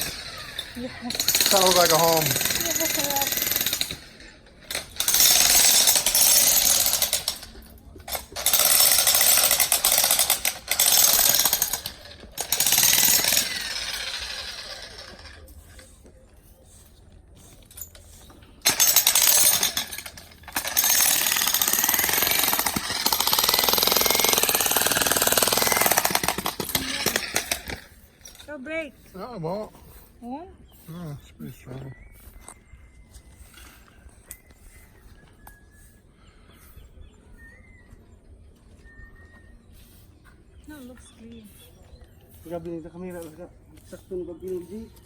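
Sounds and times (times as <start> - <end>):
jackhammer breaking rock: 0.0 - 15.4, 18.6 - 28.5.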